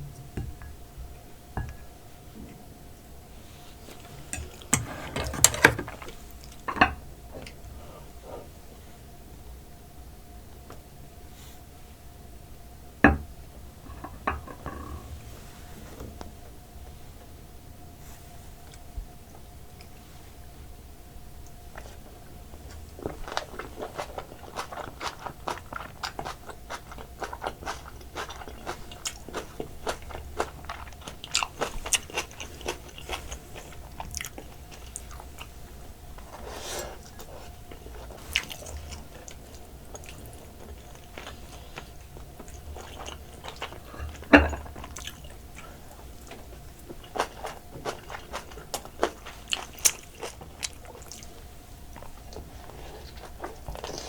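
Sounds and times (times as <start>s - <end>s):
crab shell crunching while eating: 21.7s - 54.0s
wet chewing: 21.7s - 54.0s.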